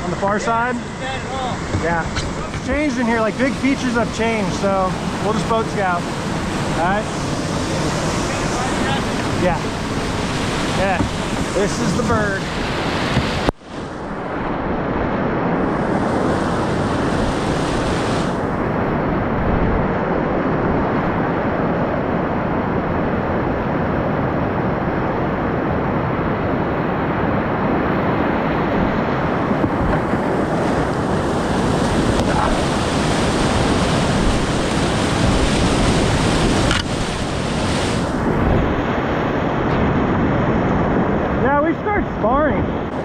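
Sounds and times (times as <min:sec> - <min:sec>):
river rushing through rapids: 0:00.0 - 0:14.8, 0:15.5 - 0:19.7, 0:26.4 - 0:39.7.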